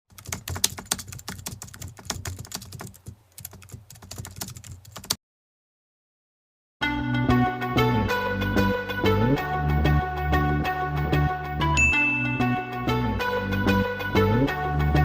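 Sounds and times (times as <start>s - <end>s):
typing on computer keyboard: 0.1s - 5.2s.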